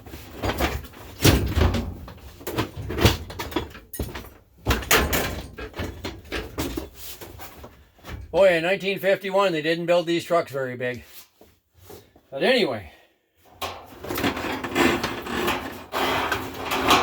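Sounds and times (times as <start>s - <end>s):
knocks and clunks of parts handled: 0.4s - 8.3s.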